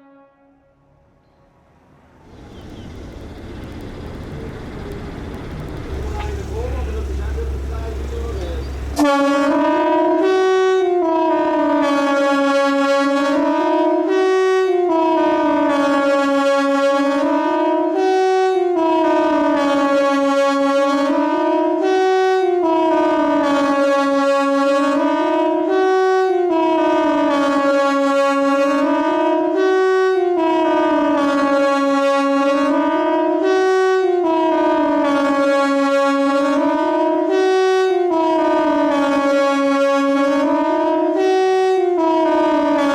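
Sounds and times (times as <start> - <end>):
siren wailing: 1.8 - 9.2.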